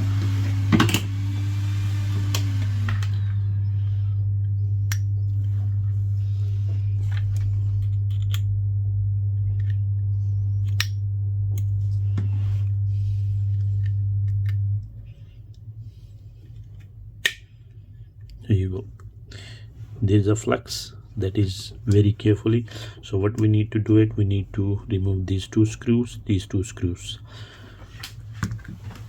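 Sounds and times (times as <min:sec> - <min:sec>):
hot air station blowing: 0:00.0 - 0:03.6.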